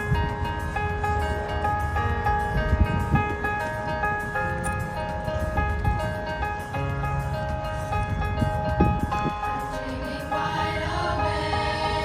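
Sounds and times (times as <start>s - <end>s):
melody of held notes: 0.0s - 12.0s.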